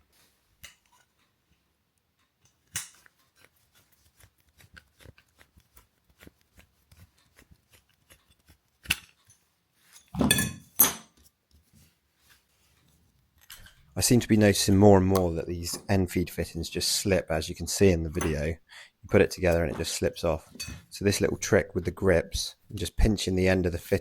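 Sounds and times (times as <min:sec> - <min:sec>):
small metallic ticks and clicks: 0:02.0 - 0:03.5.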